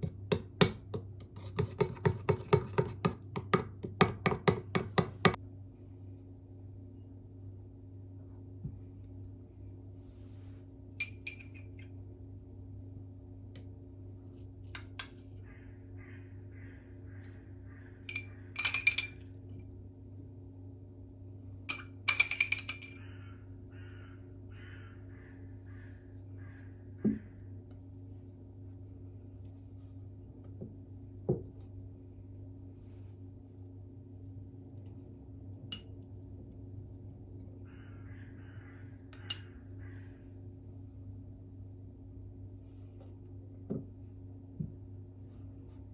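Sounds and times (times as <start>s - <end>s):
steady low hum: 0.0s - 45.9s
glassware clinking: 11.0s - 11.9s, 18.1s - 19.3s, 21.7s - 23.0s.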